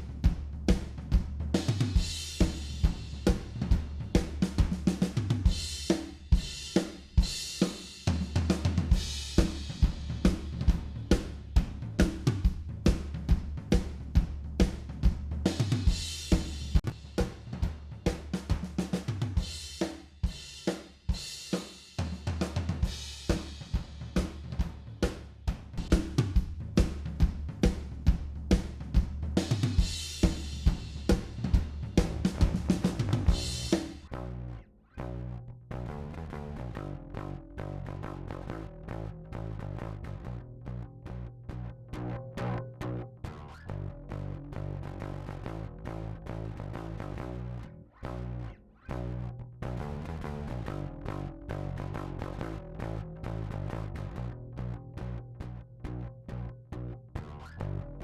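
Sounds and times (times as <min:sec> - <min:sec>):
bass line: 0:00.0 - 0:06.6, 0:08.1 - 0:19.6, 0:22.2 - 0:58.0
drum kit groove: 0:00.0 - 0:34.2.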